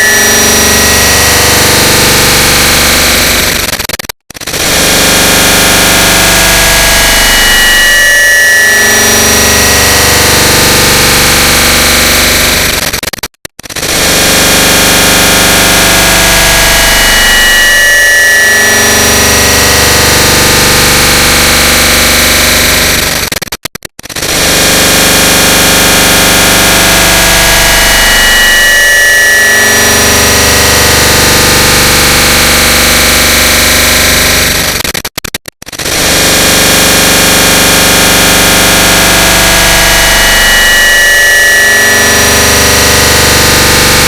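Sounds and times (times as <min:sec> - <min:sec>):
dense wall of stacked clicks: 0:03.4 - 0:04.6, 0:12.4 - 0:13.9, 0:22.9 - 0:24.4, 0:34.4 - 0:35.9.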